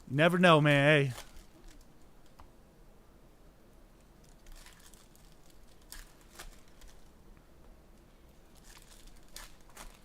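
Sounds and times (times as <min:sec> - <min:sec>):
sharp clicks of card packs: 0:01.0 - 0:02.5, 0:04.2 - 0:07.1, 0:08.6 - 0:10.0
wrappers crinkling: 0:04.2 - 0:07.1, 0:08.5 - 0:10.0.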